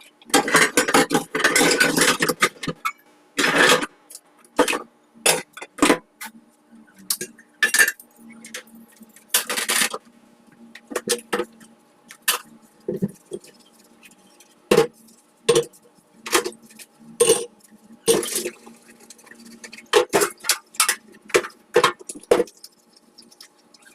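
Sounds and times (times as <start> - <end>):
faint steady hum: 0.0 - 23.9
dishes and utensils clinking: 0.3 - 3.9, 15.5 - 23.9.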